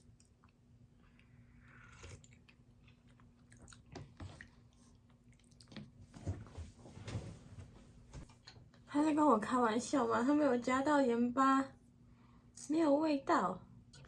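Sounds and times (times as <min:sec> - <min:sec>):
person chewing food: 0:00.0 - 0:06.0.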